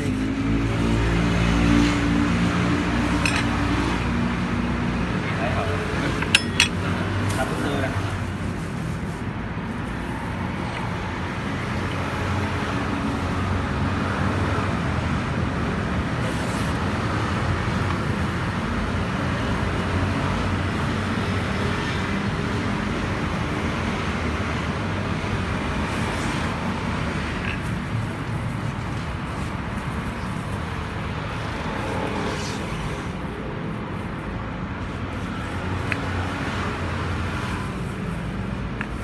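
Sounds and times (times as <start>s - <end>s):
road traffic hum: 0.0s - 39.0s.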